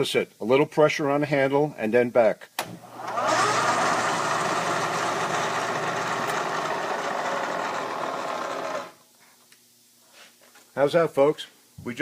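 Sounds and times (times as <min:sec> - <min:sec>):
milling machine running: 0:02.9 - 0:09.0.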